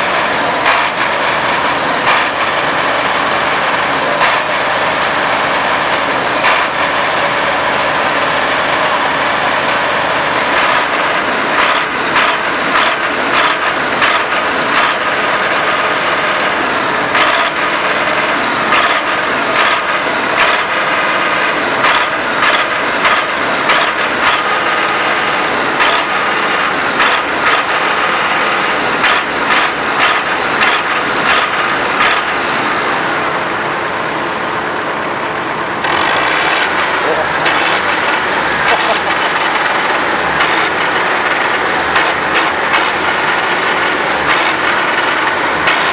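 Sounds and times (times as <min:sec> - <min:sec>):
farm machine engine running: 0:00.0 - 0:45.9
sharp clicks or knocks: 0:02.0 - 0:02.5, 0:06.4 - 0:06.8, 0:11.6 - 0:15.1, 0:17.1 - 0:17.8, 0:21.8 - 0:32.4, 0:35.8 - 0:45.9.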